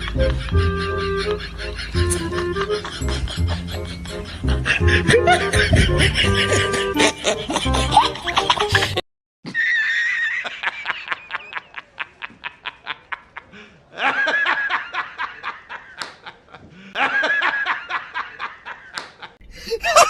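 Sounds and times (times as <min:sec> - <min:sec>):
high-pitched wheezing laughter: 0:00.0 - 0:11.2, 0:19.6 - 0:20.0.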